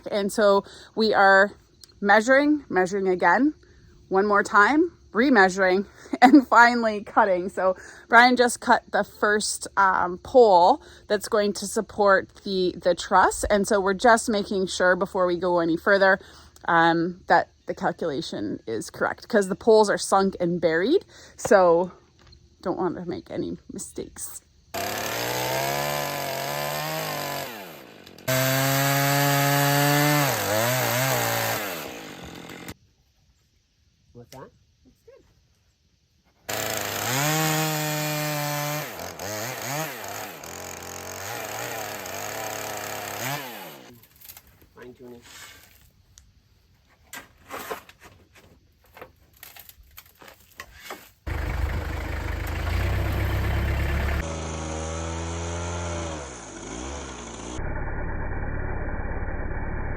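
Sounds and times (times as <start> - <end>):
power saw cutting wood: 24.8 - 32.8, 36.5 - 43.9, 51.3 - 57.8
engine starting and running: 51.3 - 59.9.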